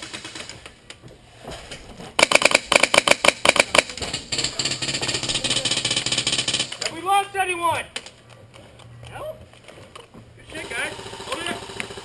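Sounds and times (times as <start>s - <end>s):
automatic airsoft fire rattle: 0.0s - 0.8s, 2.2s - 6.9s, 10.8s - 12.0s
airsoft gun shots: 2.2s - 6.9s.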